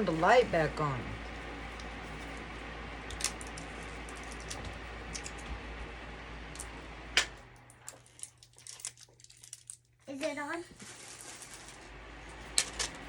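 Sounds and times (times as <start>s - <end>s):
electric fan whooshing: 0.0s - 7.9s, 10.8s - 13.0s
fan switch click: 6.6s - 7.4s.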